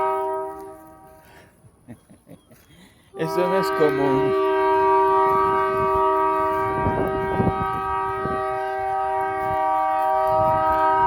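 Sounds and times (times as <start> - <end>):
train horn chord: 0.0 - 1.4, 3.1 - 11.0.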